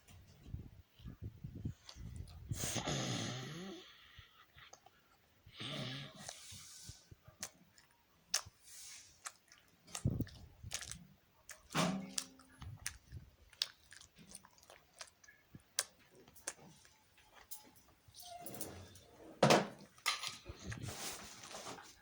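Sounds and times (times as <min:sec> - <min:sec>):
chewing gummy candy: 0:04.3 - 0:18.2, 0:20.2 - 0:22.0.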